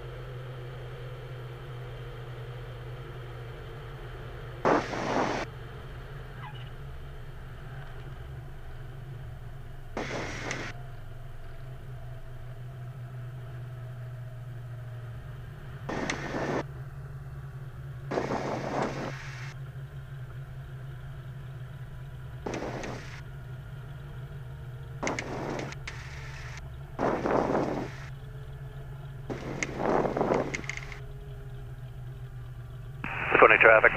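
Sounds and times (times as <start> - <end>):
aircraft engine drone: 0.0 - 33.9
intercom hiss bursts: 4.7 - 5.4, 10.0 - 10.7, 18.1 - 19.5, 33.0 - 33.9.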